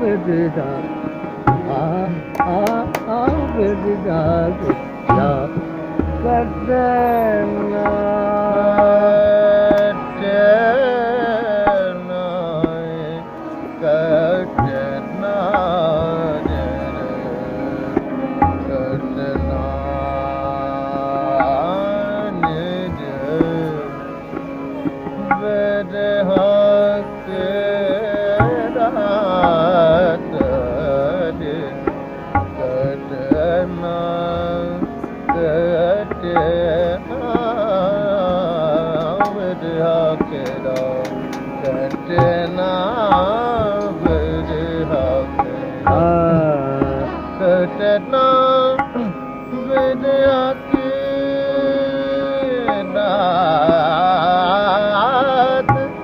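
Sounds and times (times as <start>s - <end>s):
harmonium: 0.0s - 56.0s
ornamented sung melody: 0.0s - 56.0s
person singing: 0.0s - 56.0s
tabla strokes: 1.0s - 10.0s, 21.3s - 48.0s.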